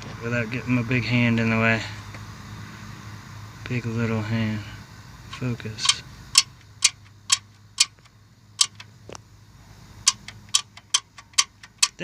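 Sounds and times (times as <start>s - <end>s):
rocker arm metallic clicks: 5.3s - 9.2s, 10.0s - 12.0s.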